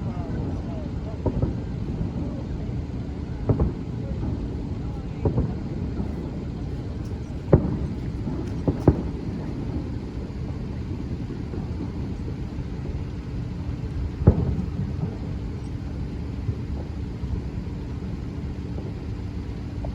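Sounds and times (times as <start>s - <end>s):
fireworks bursting: 0.0s - 19.9s.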